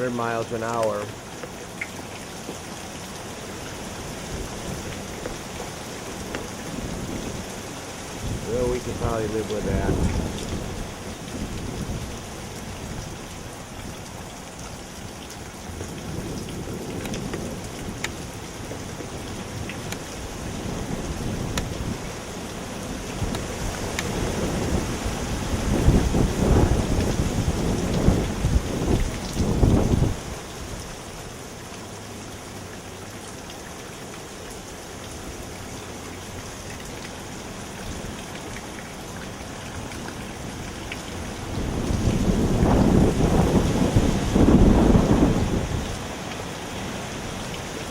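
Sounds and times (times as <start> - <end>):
gusting wind: 0.0 - 31.4, 36.2 - 47.9
heavy rain: 0.0 - 47.9
drip ticks: 0.4 - 2.6, 21.5 - 21.7.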